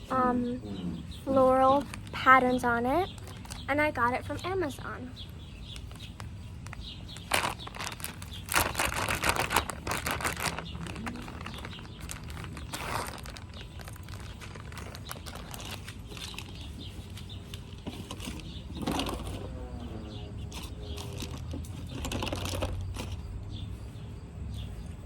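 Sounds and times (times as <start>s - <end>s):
fabric bag crinkling and rustling: 3.1s - 3.7s, 5.6s - 19.5s.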